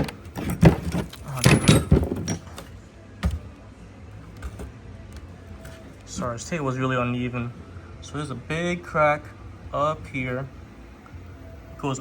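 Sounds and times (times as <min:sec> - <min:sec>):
handling clatter and knocks: 0:00.0 - 0:03.5.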